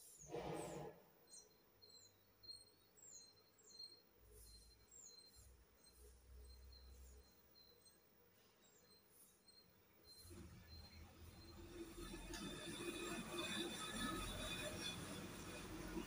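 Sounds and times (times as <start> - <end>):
faint bird chirps: 0.0 - 11.7.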